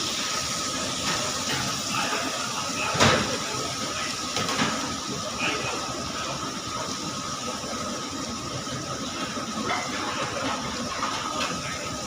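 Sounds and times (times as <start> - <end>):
mechanical hum and hiss: 0.0 - 12.0.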